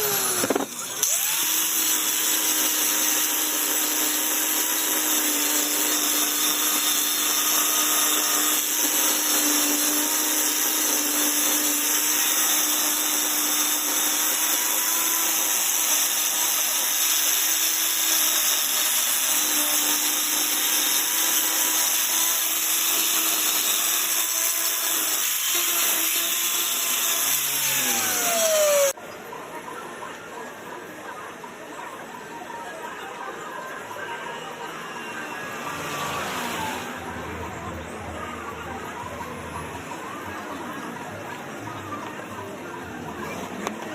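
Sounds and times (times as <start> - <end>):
power tool motor running: 0.0 - 29.0.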